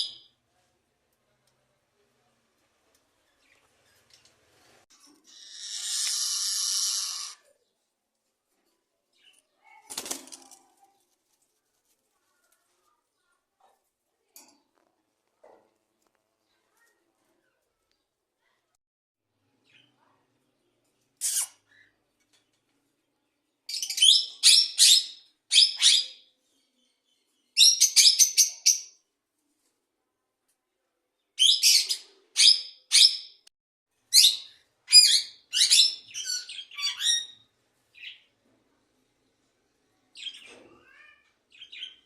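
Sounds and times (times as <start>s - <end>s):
small birds chirping: 2.9s - 8.0s, 8.6s - 10.0s, 19.4s - 29.0s, 39.2s - 42.0s.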